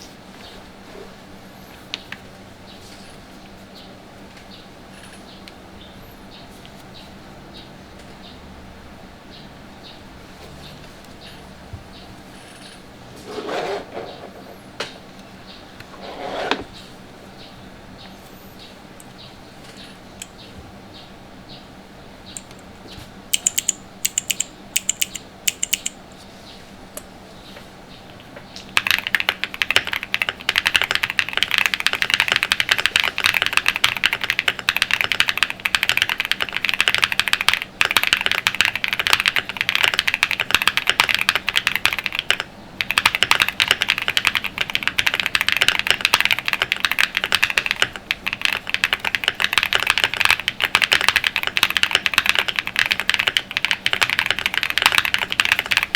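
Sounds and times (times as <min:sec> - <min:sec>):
mechanical keyboard typing: 0:23.3 - 0:26.0, 0:28.7 - 0:55.9.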